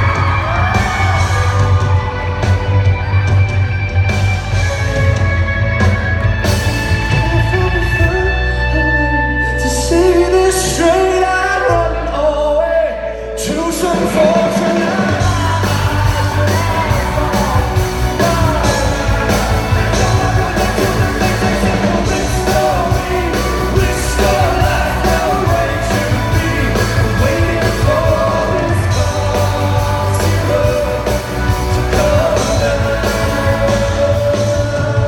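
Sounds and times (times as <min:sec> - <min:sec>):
live rock band music: 0:00.0 - 0:35.0
man singing lead: 0:06.9 - 0:35.0.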